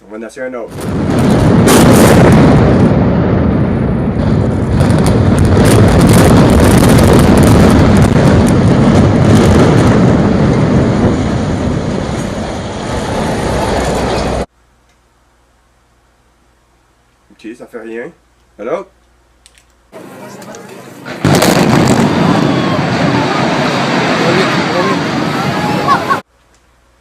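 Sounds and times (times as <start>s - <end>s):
loud steady rumbling roar: 0.9s - 14.5s, 21.2s - 26.2s.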